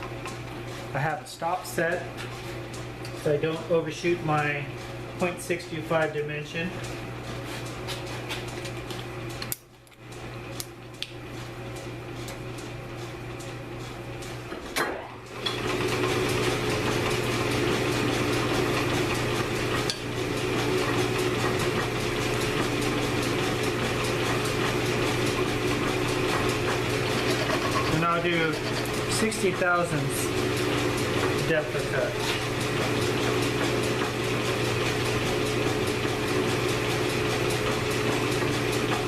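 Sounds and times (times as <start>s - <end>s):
metal lathe humming: 15.3s - 39.0s.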